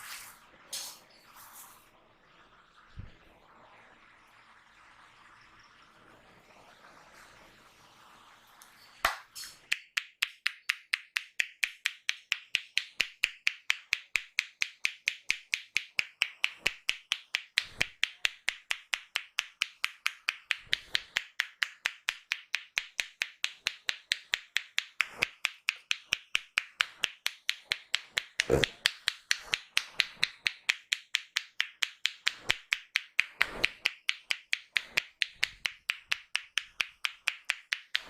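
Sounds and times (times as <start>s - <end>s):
crisp hand percussion clicks: 9.0s - 38.0s.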